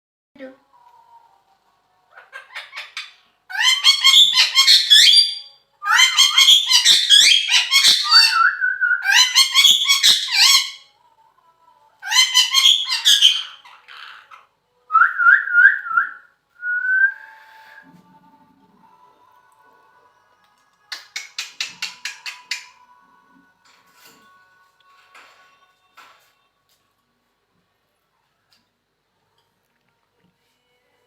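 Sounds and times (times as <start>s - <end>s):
parrot whistling: 3.5s - 10.8s, 12.1s - 13.6s
parrot chattering: 12.0s - 14.5s.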